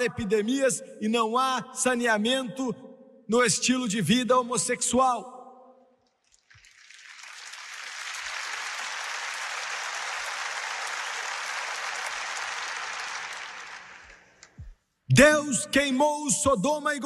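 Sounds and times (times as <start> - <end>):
audience applauding: 6.4 - 14.6.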